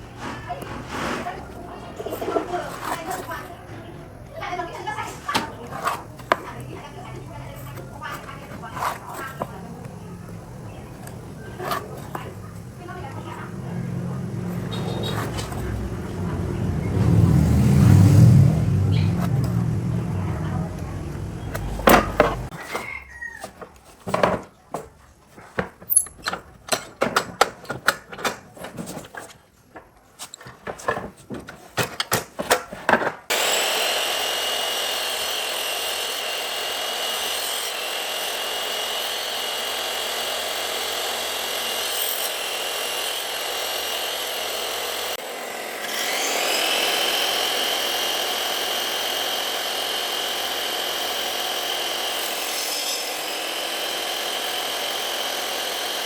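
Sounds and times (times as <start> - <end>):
knocks and scrapes on wood: 0.0 - 3.8, 5.0 - 16.4, 20.4 - 22.8, 23.4 - 33.3
power tool whining on wood: 0.1 - 3.6, 4.2 - 24.4, 33.3 - 56.0.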